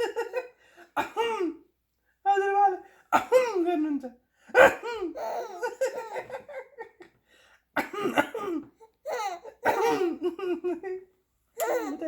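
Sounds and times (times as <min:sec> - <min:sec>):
man coughing: 0:01.0 - 0:01.6, 0:04.6 - 0:05.1, 0:07.8 - 0:08.7, 0:09.6 - 0:10.3
baby laughing: 0:05.1 - 0:06.6, 0:09.0 - 0:11.0, 0:11.6 - 0:12.0.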